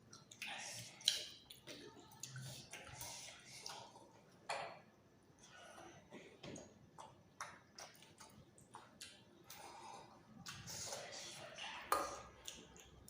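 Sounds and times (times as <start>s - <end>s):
person chewing food: 5.4s - 13.0s.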